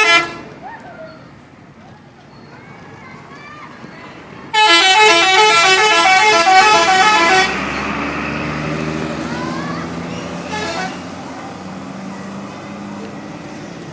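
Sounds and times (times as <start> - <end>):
musical bus horn tune: 0.0 - 0.6, 4.5 - 7.8, 10.4 - 11.2
bus engine running: 0.0 - 13.9.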